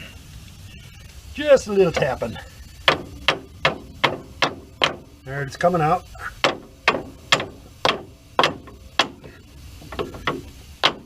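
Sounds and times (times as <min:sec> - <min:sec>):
hammer tapping on steel: 0:02.9 - 0:05.1, 0:06.4 - 0:11.0.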